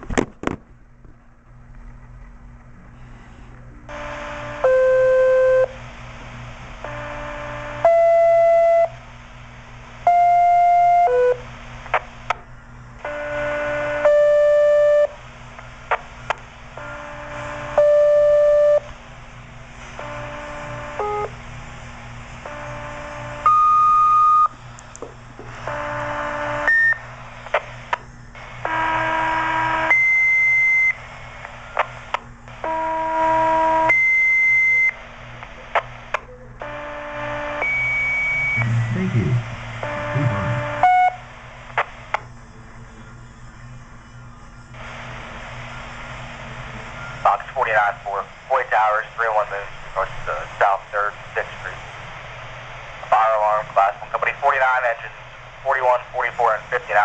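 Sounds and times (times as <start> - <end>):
low steady hum: 0.0 - 57.0
radio clicks: 27.5 - 28.0.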